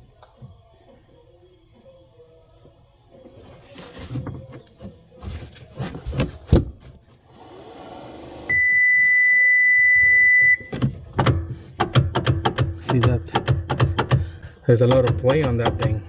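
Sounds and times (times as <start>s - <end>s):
high-pitched beep: 8.5s - 10.7s.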